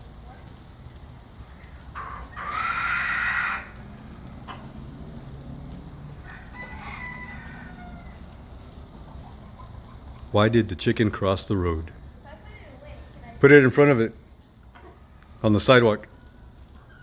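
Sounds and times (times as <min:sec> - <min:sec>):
faint chicken calls: 0:01.5 - 0:05.0, 0:06.1 - 0:10.4, 0:14.7 - 0:17.0
rooster crowing: 0:02.0 - 0:04.7, 0:06.1 - 0:08.5, 0:14.9 - 0:17.0.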